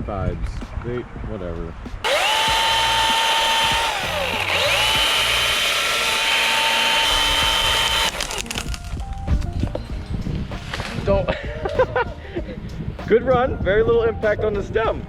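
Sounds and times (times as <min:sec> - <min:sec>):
chainsaw whining: 0:02.0 - 0:08.8.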